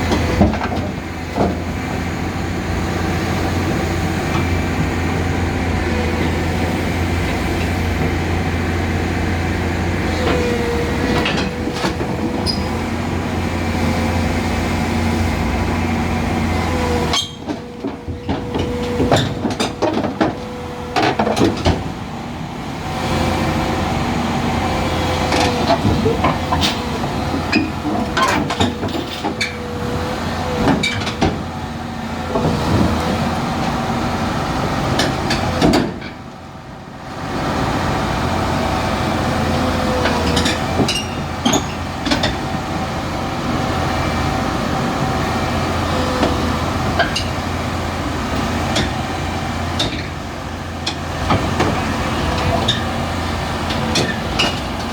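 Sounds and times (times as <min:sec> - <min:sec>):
hydraulic whine: 0:00.0 - 0:36.2
excavator diesel engine under load: 0:00.0 - 0:54.9.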